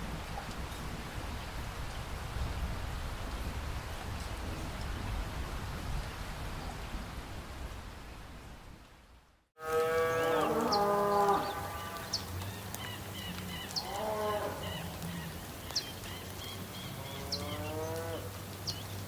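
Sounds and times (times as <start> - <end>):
livestock calls: 12.9 - 15.4.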